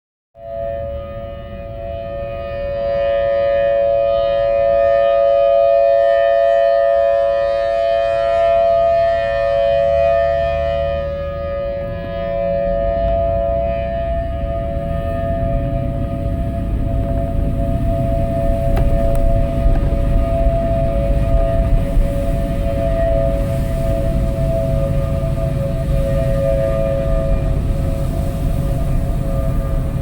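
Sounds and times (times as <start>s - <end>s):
loud steady drone: 0.4s - 30.0s
low rumble: 10.9s - 30.0s.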